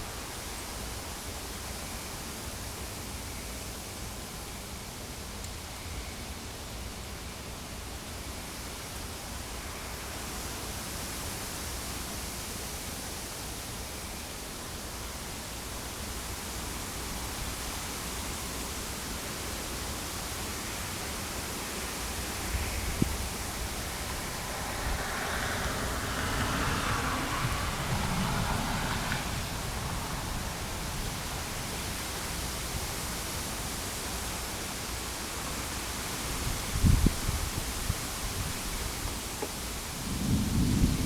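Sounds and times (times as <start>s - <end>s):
wind and rain rushing: 15.6s - 41.0s
wind rumble on microphone: 21.9s - 33.5s, 36.2s - 41.0s.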